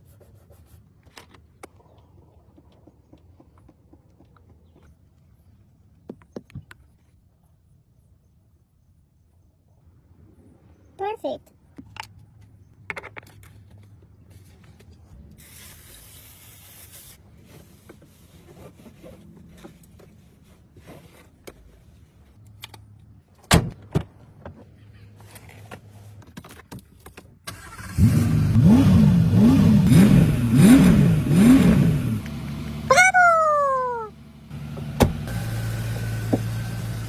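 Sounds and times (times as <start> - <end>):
car engine starting and revving: 27.5 - 32.9, 34.1 - 37.0.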